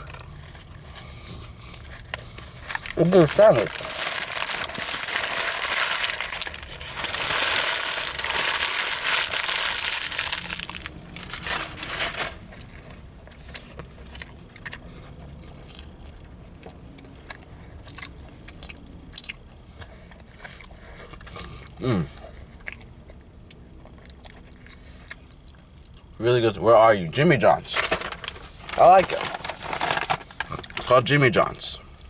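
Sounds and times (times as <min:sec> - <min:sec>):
paper wrapper crinkling: 0:00.0 - 0:14.3, 0:27.5 - 0:31.1.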